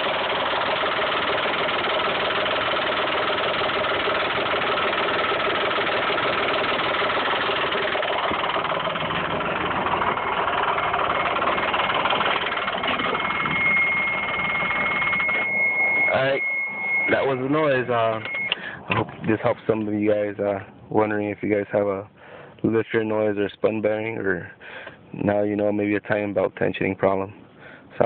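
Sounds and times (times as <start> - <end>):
loud engine clacking: 0.0 - 16.1
car engine idling: 0.0 - 20.6
steady high-pitched beep: 10.0 - 18.6.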